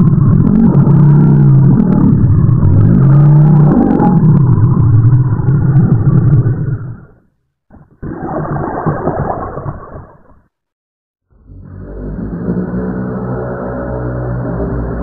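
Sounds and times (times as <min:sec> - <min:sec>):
deep rumbling dinosaur call: 0:00.0 - 0:09.1.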